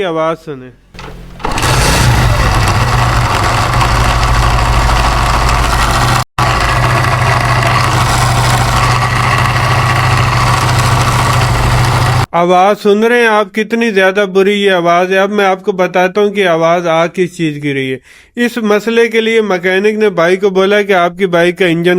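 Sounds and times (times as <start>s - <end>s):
engine rubbing noise: 1.0s - 12.3s
motorcycle engine running: 1.0s - 12.3s.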